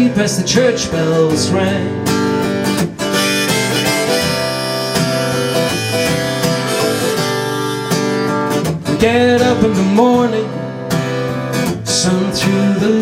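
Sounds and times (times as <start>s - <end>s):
strummed acoustic guitar: 0.0s - 13.0s
harmonica chords: 3.0s - 8.6s.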